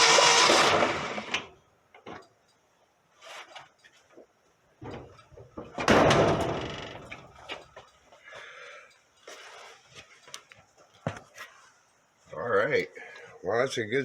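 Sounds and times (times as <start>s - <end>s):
faint knocks and handling noises: 1.9s - 12.3s.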